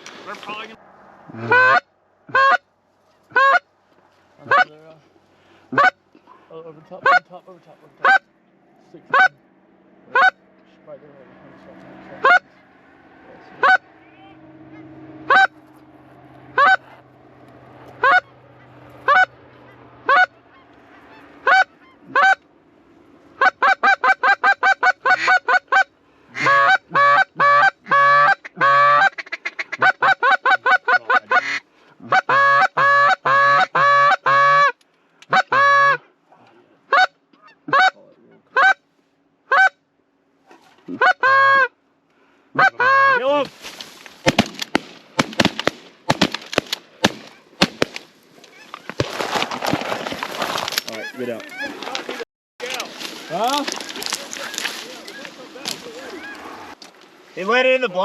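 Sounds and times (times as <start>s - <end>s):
goose call honks and clucks: 0.3s - 3.7s, 4.4s - 4.9s, 5.6s - 8.3s, 9.0s - 9.5s, 10.1s - 10.5s, 11.8s - 12.7s, 13.4s - 22.5s, 23.3s - 41.8s, 42.5s - 43.5s, 48.4s - 56.8s.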